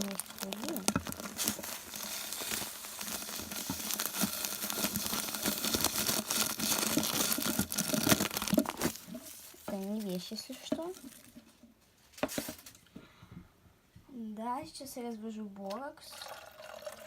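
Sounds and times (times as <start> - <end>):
crinkling and rustling handling: 0.0 - 13.0.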